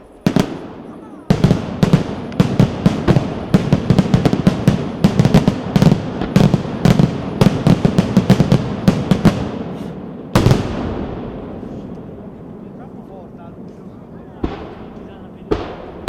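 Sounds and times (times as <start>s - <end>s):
fireworks bangs: 0.0s - 16.0s.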